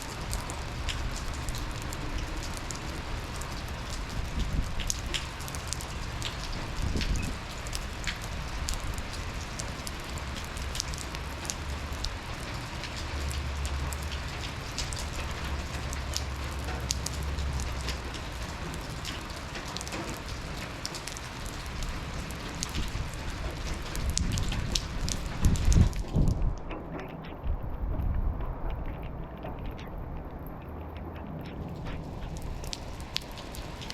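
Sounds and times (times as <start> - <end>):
raindrops tapping: 0.0 - 33.9
steady rain falling: 0.0 - 33.9
low rumble: 24.0 - 33.9.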